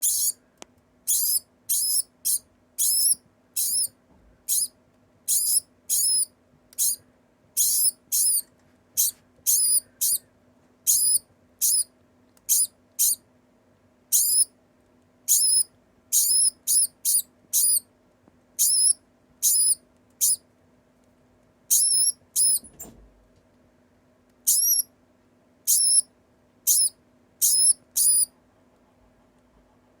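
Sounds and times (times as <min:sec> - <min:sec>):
degu high-pitched calls: 0:00.0 - 0:00.4, 0:01.1 - 0:07.0, 0:07.6 - 0:10.3, 0:10.9 - 0:11.9, 0:12.5 - 0:13.2, 0:14.1 - 0:14.5, 0:15.3 - 0:17.9, 0:18.6 - 0:20.4, 0:21.7 - 0:22.7, 0:24.5 - 0:24.9, 0:25.7 - 0:26.1, 0:26.7 - 0:28.3.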